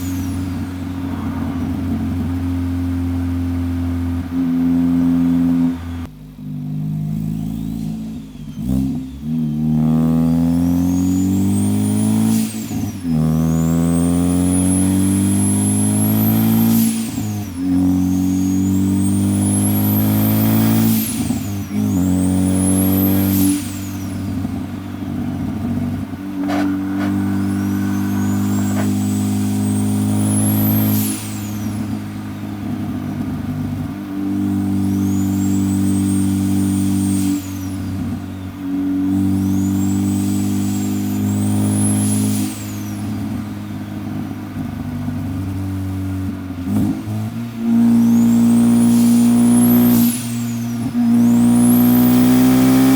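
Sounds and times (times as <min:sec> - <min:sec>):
car engine accelerating: 0:00.0 - 0:52.9
turbo whistle: 0:19.6 - 0:32.0.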